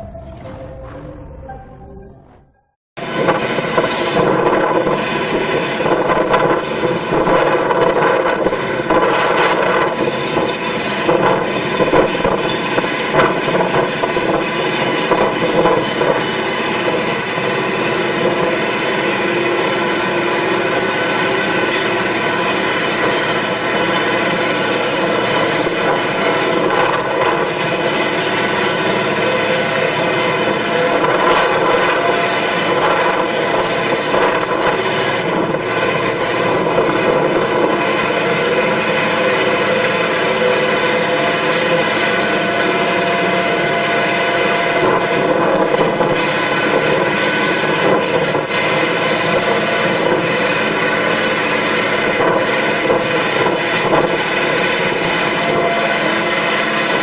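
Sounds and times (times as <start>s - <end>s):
farm machine engine droning: 0.0s - 57.0s.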